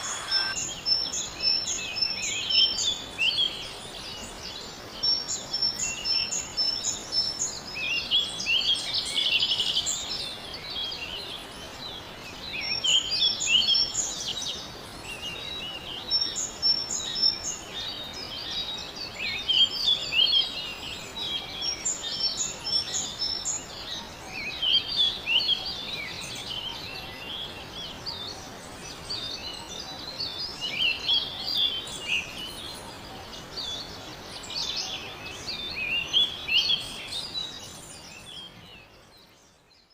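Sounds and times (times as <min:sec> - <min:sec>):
birds chirping and singing: 0:00.0 - 0:04.4
steady background hiss: 0:00.0 - 0:39.9.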